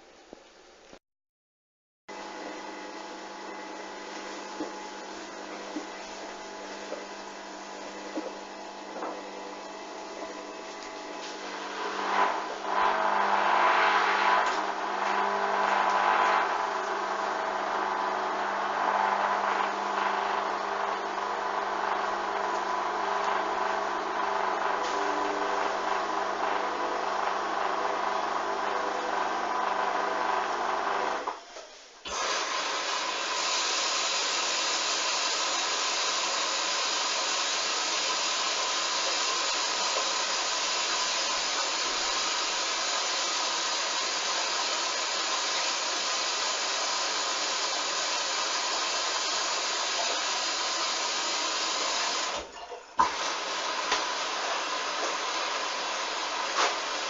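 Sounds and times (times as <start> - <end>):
washing machine motor hum: 2.1 - 57.0
rushing hiss of water: 32.1 - 57.0.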